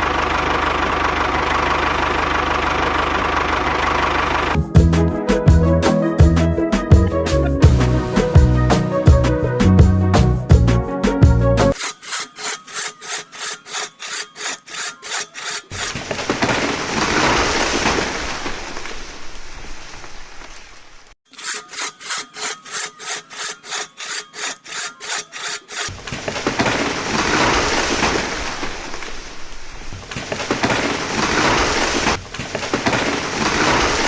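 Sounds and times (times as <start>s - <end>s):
saw cutting wood: 11.7s - 16.0s, 21.2s - 25.9s.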